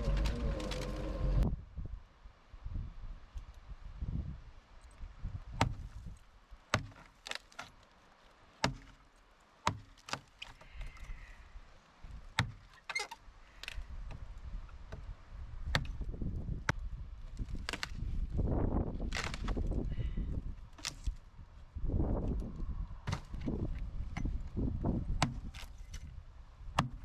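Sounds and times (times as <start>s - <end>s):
low rumble: 0.0s - 1.7s.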